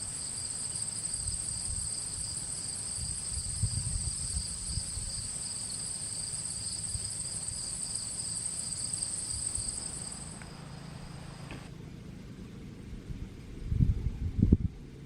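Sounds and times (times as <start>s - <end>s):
insects trilling: 0.0s - 11.7s.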